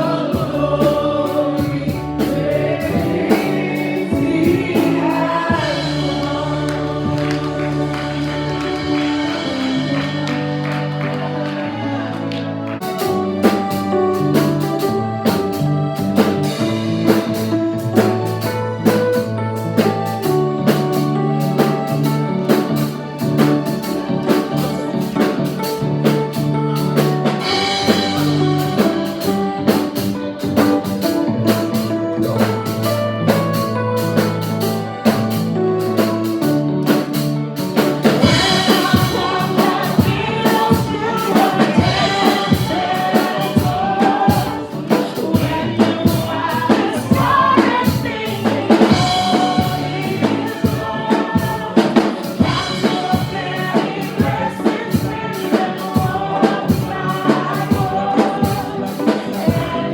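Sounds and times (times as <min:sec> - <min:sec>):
person singing: 0:00.0 - 0:15.0, 0:38.1 - 0:59.9
bass: 0:00.0 - 0:59.9
drum kit beat: 0:00.0 - 0:59.9
keyboard chords: 0:00.0 - 0:59.9.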